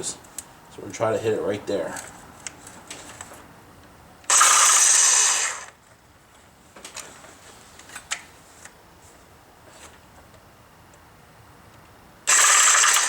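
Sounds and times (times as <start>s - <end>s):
reciprocating saw cutting metal: 4.3s - 5.7s, 12.3s - 13.0s.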